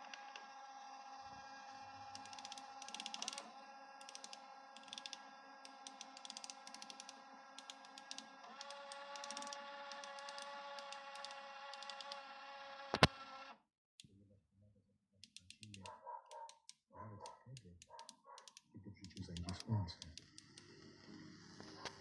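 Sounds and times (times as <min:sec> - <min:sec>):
disc player mechanism whirring: 0:00.0 - 0:13.6, 0:19.2 - 0:22.0
quick ticking of disc reader: 0:02.2 - 0:12.2.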